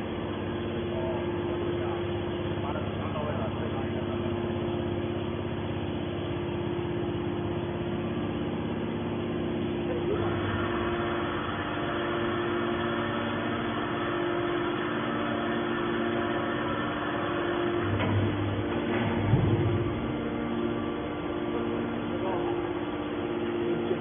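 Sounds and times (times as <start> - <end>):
high steady machine noise: 0.0 - 24.0
hydraulic power unit humming: 0.0 - 24.0.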